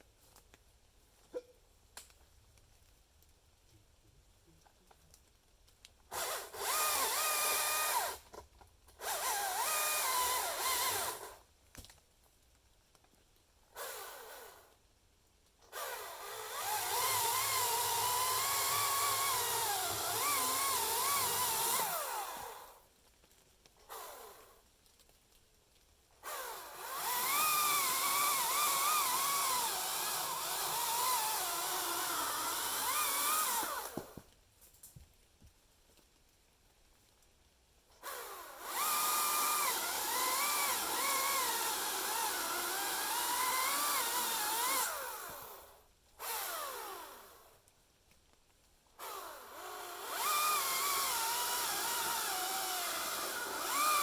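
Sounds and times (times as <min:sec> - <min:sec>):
chainsaw cutting wood: 0:06.1 - 0:11.5, 0:13.8 - 0:14.8, 0:15.7 - 0:22.8, 0:23.8 - 0:24.7, 0:26.2 - 0:34.3, 0:38.0 - 0:47.6, 0:49.0 - 0:54.0.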